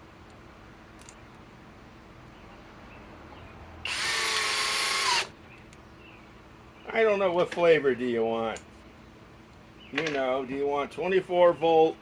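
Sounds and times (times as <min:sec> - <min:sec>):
drill motor driving screw: 0:03.9 - 0:05.3.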